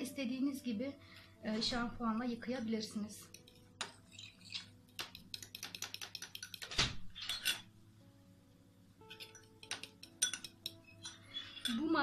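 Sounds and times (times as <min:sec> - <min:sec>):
metal utensil clinking against bowl: 0:03.2 - 0:07.7, 0:09.1 - 0:12.0.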